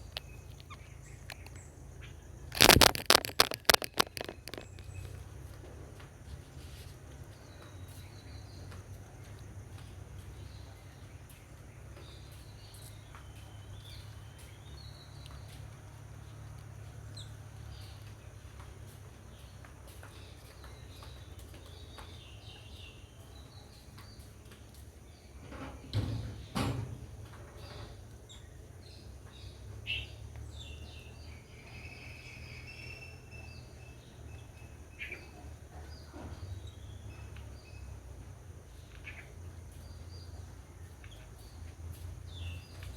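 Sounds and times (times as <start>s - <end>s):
small birds chirping: 0.0s - 26.5s, 27.2s - 42.9s
whistled bird calls: 31.3s - 33.9s.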